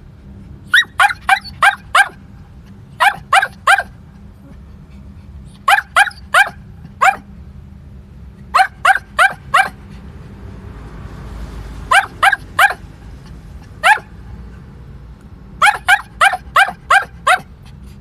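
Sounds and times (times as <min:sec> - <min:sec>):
small dog barking: 0:00.7 - 0:02.2, 0:03.0 - 0:04.0, 0:05.6 - 0:07.3, 0:08.5 - 0:09.8, 0:11.9 - 0:12.8, 0:13.8 - 0:14.1, 0:15.6 - 0:17.5.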